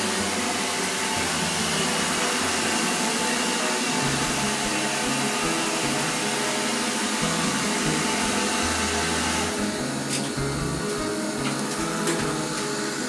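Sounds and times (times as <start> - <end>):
robot vacuum cleaner hissing: 0.0 - 13.0.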